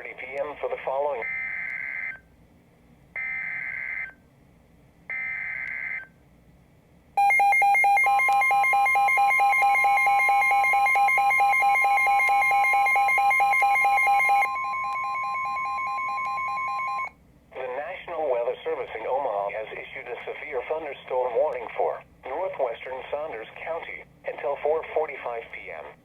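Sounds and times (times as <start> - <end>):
steady warning alarm tone: 3.2 - 4.2, 5.1 - 6.1, 7.2 - 17.2
rapidly pulsing alarm beep: 7.2 - 17.2.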